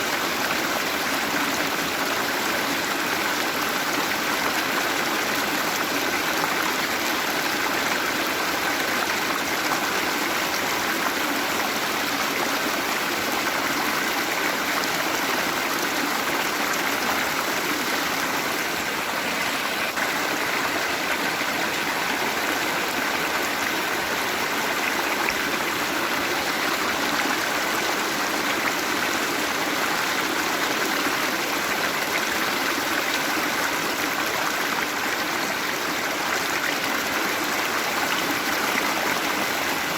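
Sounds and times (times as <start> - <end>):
waterfall rushing: 6.1 - 33.9.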